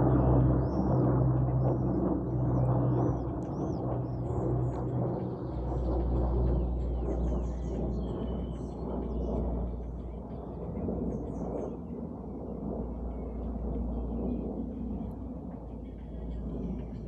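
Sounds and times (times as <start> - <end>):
small birds chirping: 0.0 - 12.1
airplane engine rumble overhead: 0.0 - 17.0.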